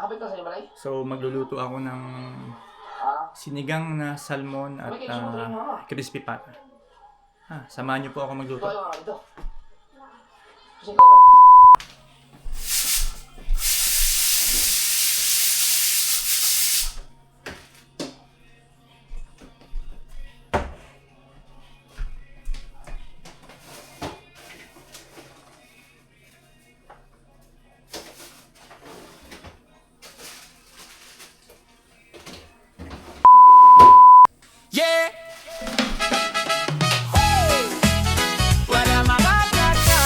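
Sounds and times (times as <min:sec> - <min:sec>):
loud steady beep: 0:11.0 - 0:11.8, 0:33.3 - 0:34.3
steady hiss: 0:12.4 - 0:17.0
rustling and handling noises: 0:19.2 - 0:33.3.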